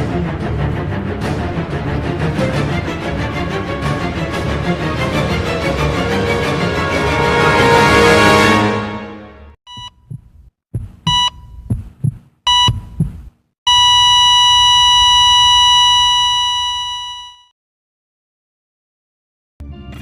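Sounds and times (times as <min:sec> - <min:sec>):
music: 0:00.0 - 0:09.6, 0:19.6 - 0:20.0
heartbeat thumps: 0:09.7 - 0:13.5
heart monitor beeps: 0:09.7 - 0:17.5
flatline tone: 0:13.7 - 0:17.5.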